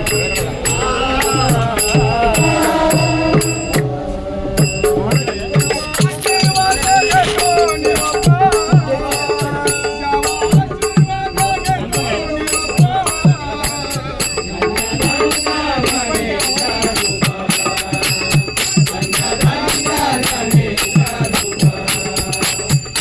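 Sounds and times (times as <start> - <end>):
deep drum strokes: 0.0 - 12.1
devotional music: 0.0 - 23.0
jingling percussion: 0.0 - 23.0.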